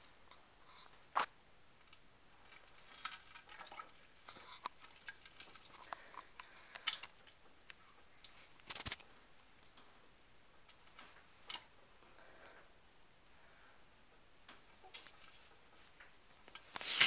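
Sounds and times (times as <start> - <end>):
wet crackling and squishing clicks: 1.1 - 9.8.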